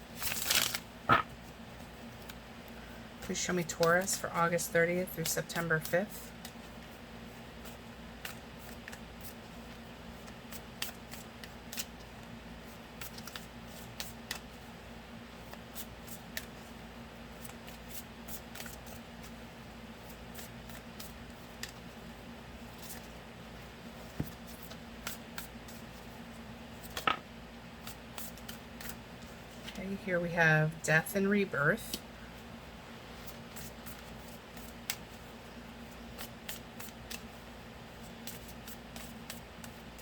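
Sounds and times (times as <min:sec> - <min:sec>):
cards being shuffled: 0:00.1 - 0:01.3, 0:07.6 - 0:14.6, 0:15.4 - 0:19.4, 0:20.0 - 0:22.0, 0:22.6 - 0:23.2, 0:24.0 - 0:26.0, 0:26.7 - 0:27.2, 0:27.8 - 0:29.8, 0:33.2 - 0:40.0.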